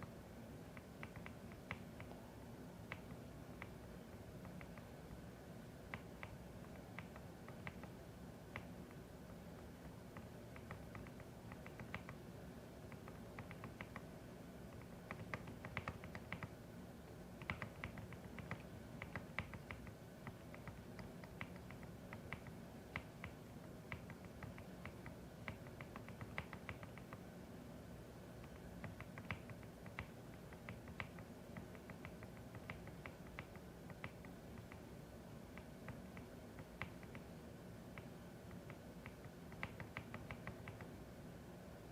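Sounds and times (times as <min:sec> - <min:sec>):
low steady hum: 0:00.0 - 0:41.9
mechanical keyboard typing: 0:12.9 - 0:14.1, 0:14.7 - 0:16.5, 0:17.4 - 0:27.2, 0:38.0 - 0:40.9.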